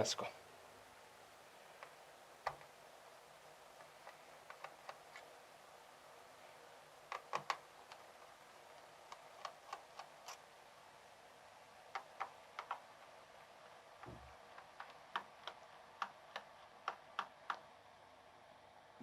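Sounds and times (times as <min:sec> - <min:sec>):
screwdriver clicking on plastic: 0:03.8 - 0:05.2, 0:07.1 - 0:10.4, 0:11.9 - 0:13.0, 0:14.0 - 0:17.7.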